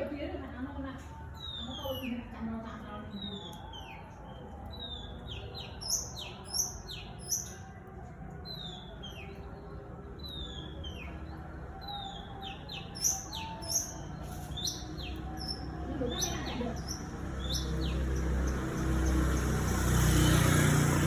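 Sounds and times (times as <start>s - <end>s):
bird whistled song: 11.8s - 19.5s.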